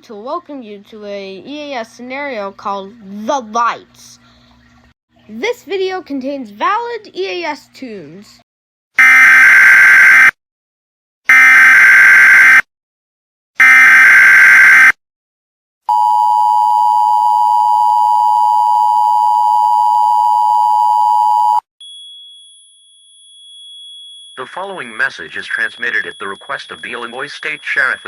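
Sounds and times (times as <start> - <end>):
faint high steady tone: 24.4 - 28.0
two-tone attention signal: 24.4 - 28.0
screeching digital data bursts: 25.2 - 28.0.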